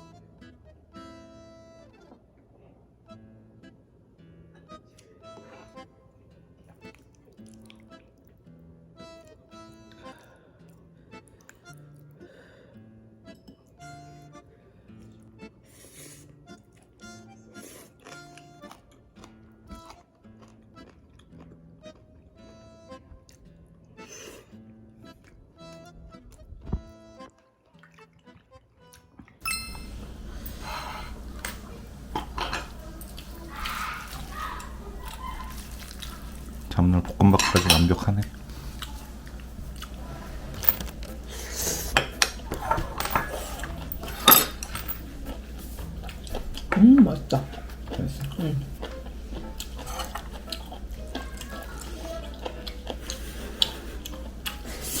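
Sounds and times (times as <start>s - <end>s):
faint background music: 0.0s - 55.0s
utensils tapping dishes: 29.4s - 38.2s, 40.1s - 45.4s
steady low hum: 29.4s - 51.1s
spatula scraping and clinking: 41.9s - 45.1s.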